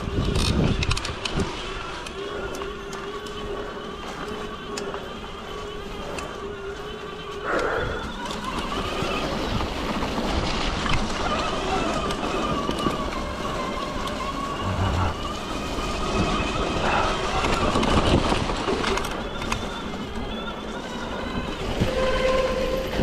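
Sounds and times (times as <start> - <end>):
wind noise: 0.0 - 2.6, 14.4 - 20.5
electric motor whine: 10.8 - 22.8
tyres rumbling: 14.4 - 15.6.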